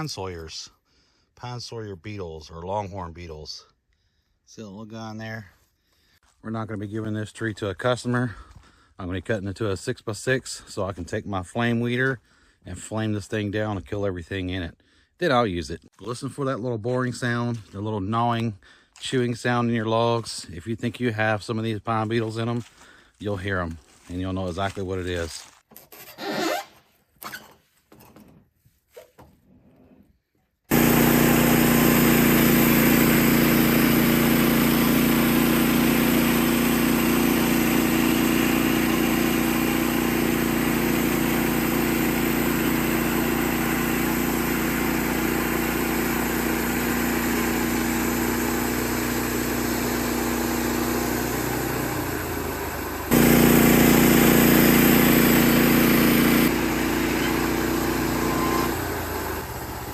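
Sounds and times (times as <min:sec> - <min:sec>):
sawmill engine running: 0:30.7 - 0:59.9.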